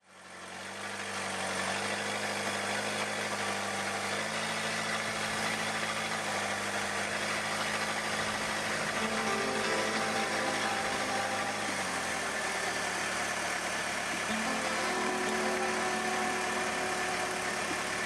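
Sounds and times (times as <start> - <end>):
boat engine running: 5.2 - 18.0.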